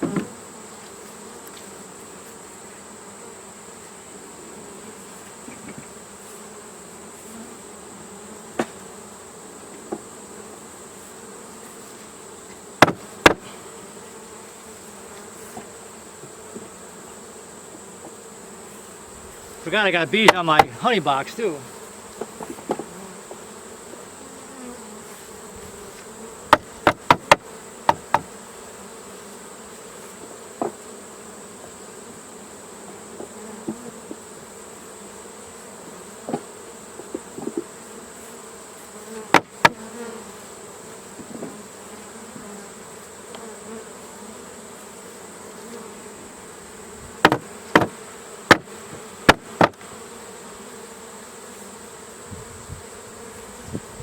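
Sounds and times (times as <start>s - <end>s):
honeybees buzzing: 0.0s - 54.0s
knocks of hive equipment: 8.5s - 8.8s, 12.8s - 13.5s, 20.0s - 21.2s, 22.2s - 22.9s, 26.5s - 28.4s, 39.3s - 39.8s, 47.2s - 49.9s.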